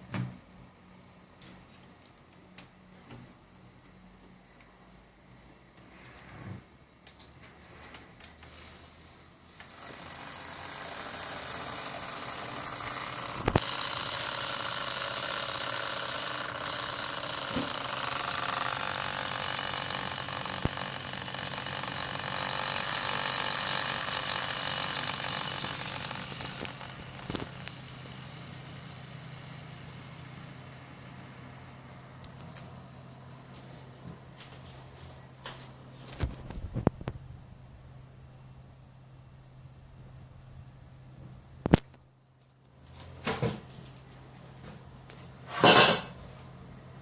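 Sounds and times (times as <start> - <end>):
liquid cooler pump noise: 8.2 - 32.8
steady low hum: 8.6 - 45.5
sharp clicks: 9.6 - 28.2.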